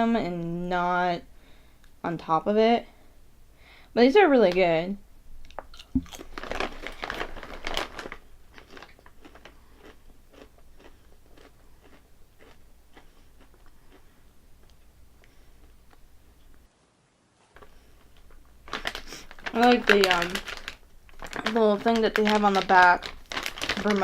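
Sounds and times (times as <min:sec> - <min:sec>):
potato chips crunching while chewed: 0:05.5 - 0:14.7, 0:17.6 - 0:24.0.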